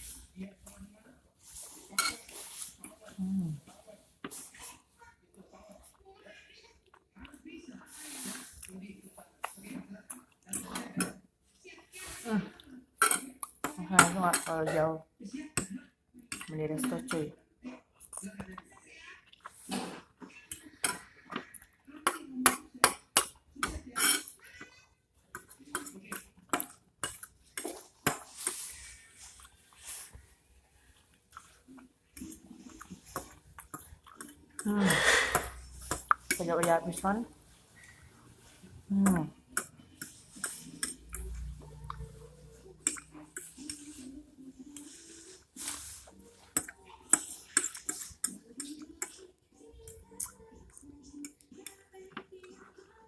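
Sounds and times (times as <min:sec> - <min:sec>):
cutlery clinking on a plate: 0:01.9 - 0:02.5, 0:13.0 - 0:14.9, 0:19.7 - 0:24.4.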